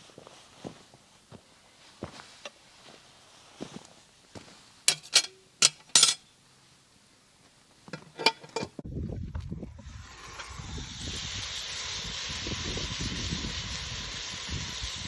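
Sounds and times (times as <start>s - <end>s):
cookware clinking: 4.9s - 6.2s.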